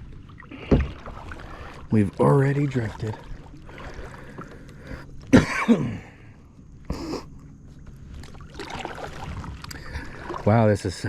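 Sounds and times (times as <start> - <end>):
man coughing: 5.3 - 6.2.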